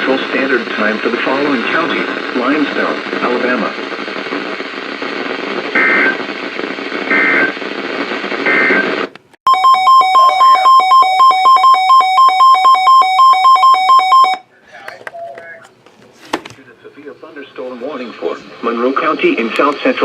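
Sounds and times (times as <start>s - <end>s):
radio hiss: 0.0s - 9.2s, 14.4s - 20.0s
two-tone electronic alert beeping: 9.5s - 14.4s.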